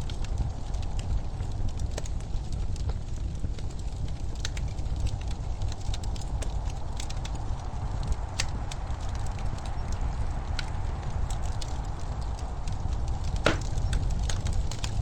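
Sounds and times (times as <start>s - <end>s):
low fire rumble: 0.0s - 15.0s
wood fire pops and snaps: 10.6s - 15.0s.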